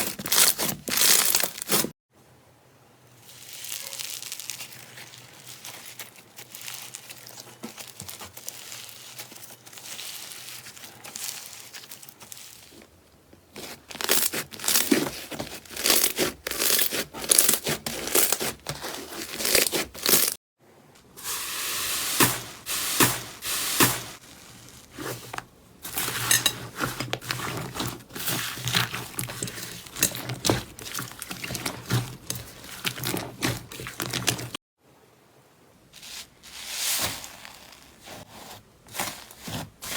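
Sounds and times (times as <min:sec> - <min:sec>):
slime crackling: 0:00.0 - 0:01.8, 0:03.4 - 0:12.8, 0:27.2 - 0:34.6.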